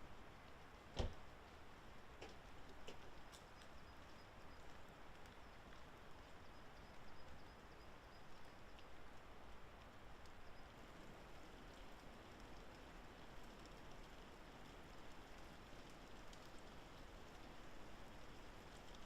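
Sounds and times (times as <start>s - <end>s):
water dripping from trees: 0.0s - 19.0s.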